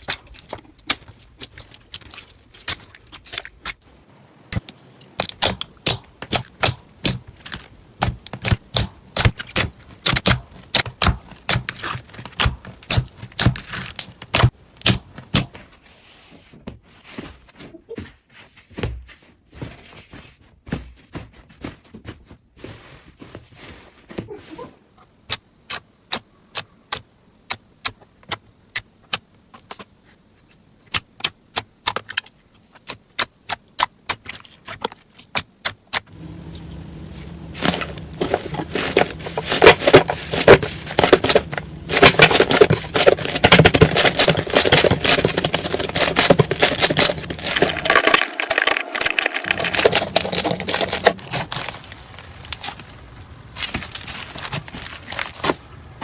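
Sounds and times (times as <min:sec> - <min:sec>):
low hum: 0:36.1 - 0:44.7
slime crackling: 0:36.1 - 0:55.7.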